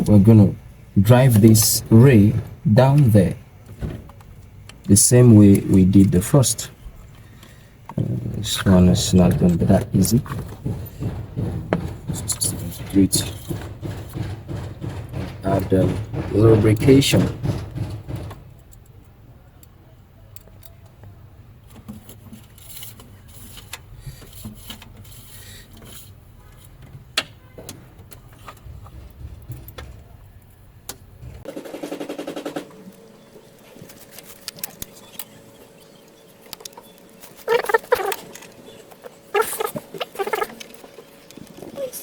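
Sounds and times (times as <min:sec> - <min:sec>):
steady low hum: 0:00.0 - 0:19.4.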